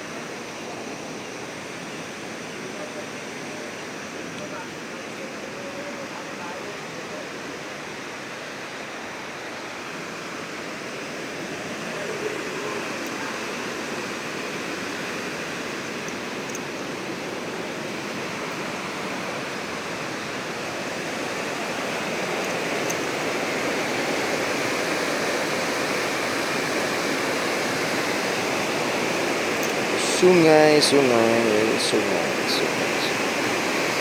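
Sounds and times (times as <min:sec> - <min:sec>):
river water rushing: 0:00.0 - 0:34.0.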